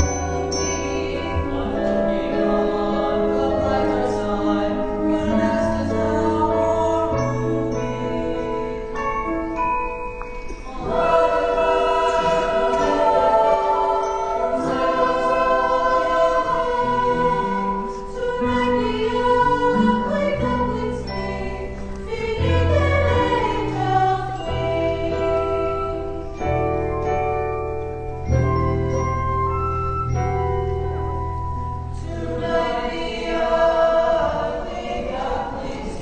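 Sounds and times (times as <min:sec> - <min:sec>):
voices singing in chorus: 0:00.0 - 0:09.0, 0:10.6 - 0:26.4, 0:32.0 - 0:36.0
instrumental accompaniment: 0:00.0 - 0:36.0.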